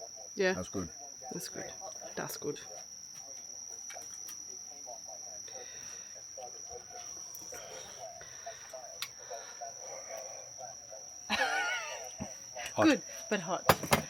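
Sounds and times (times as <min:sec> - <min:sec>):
night insects chirring: 0:00.0 - 0:14.0.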